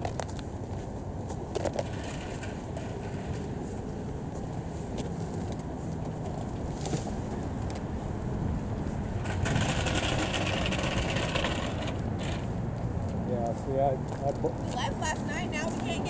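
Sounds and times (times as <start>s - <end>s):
vehicle engine rumble: 0.0s - 16.0s
road or wind noise hiss: 0.4s - 14.1s.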